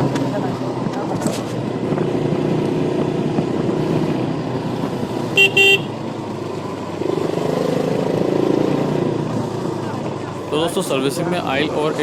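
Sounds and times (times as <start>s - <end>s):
horn beeps: 5.4s - 6.0s.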